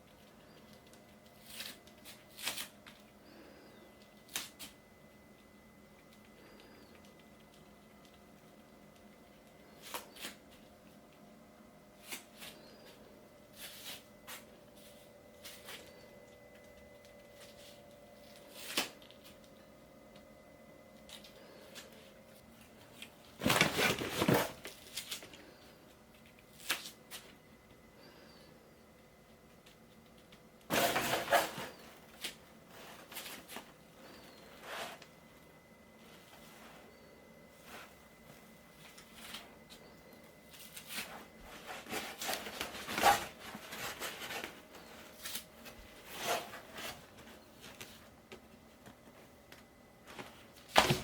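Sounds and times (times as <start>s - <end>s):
rustling and scratching: 0.1s - 3.4s, 12.0s - 19.6s, 21.0s - 27.4s, 29.3s - 35.2s, 36.0s - 49.3s
scrape: 30.7s - 31.8s, 34.5s - 35.0s, 46.0s - 47.1s.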